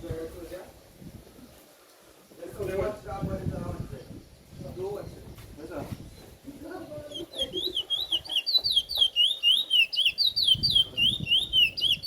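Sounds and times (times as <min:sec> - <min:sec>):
bullfinch whistling song: 0:07.1 - 0:12.0.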